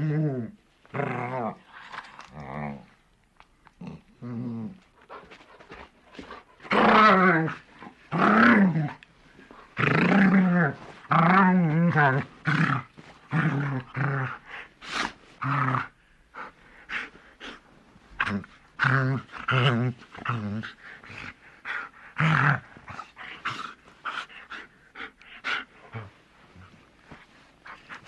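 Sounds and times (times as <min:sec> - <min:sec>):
large dog growling: 0:06.2 - 0:14.7.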